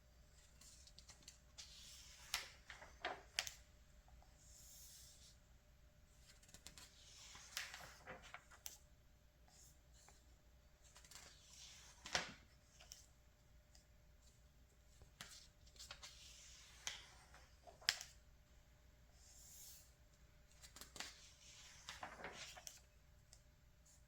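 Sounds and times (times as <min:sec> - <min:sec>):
magazine pages turning: 0:20.6 - 0:22.9.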